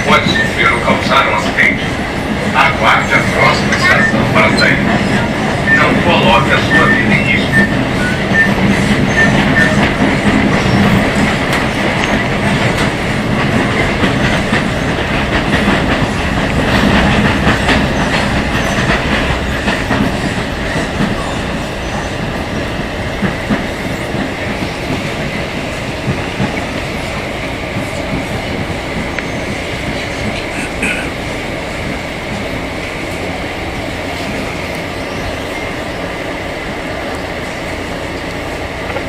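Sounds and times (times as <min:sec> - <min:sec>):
steady train rumble: 0:00.0 - 0:39.0
train wheels clicking over rail joints: 0:03.2 - 0:33.3.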